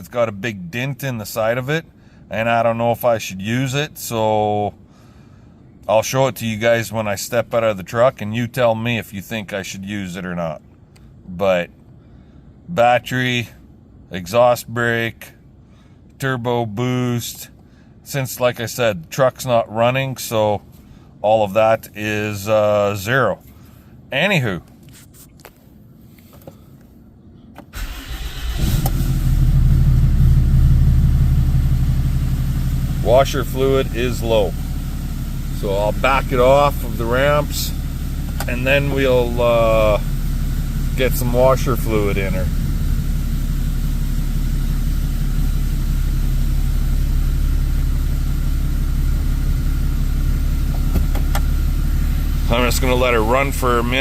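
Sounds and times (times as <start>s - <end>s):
diesel engine starting and idling: 27.6s - 54.0s.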